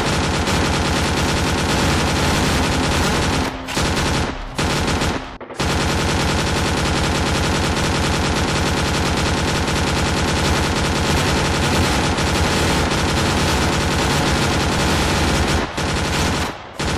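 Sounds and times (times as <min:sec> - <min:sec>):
machine gun firing: 0:00.0 - 0:16.9.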